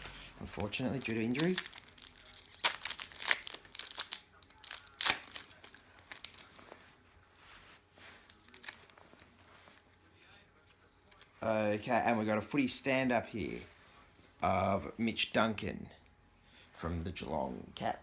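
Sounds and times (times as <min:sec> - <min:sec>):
wrapper crinkling and tearing: 0:00.0 - 0:06.8, 0:08.0 - 0:09.5
faint rustling: 0:05.5 - 0:11.5.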